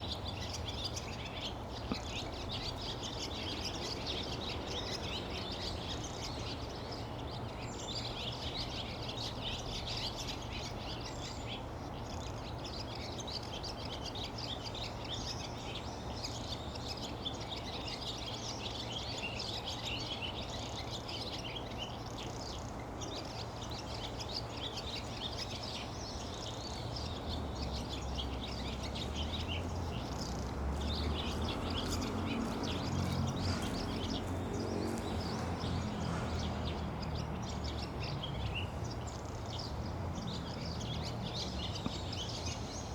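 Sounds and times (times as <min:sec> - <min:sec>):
swallows twittering: 0:00.0 - 0:42.9.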